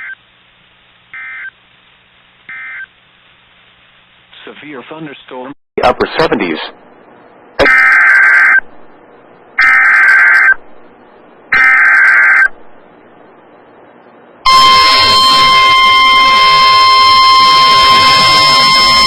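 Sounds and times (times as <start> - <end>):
steady attention tone: 5.8 - 19.0
screeching digital data tones: 7.6 - 8.7, 9.6 - 10.6, 11.5 - 12.6, 14.5 - 19.0.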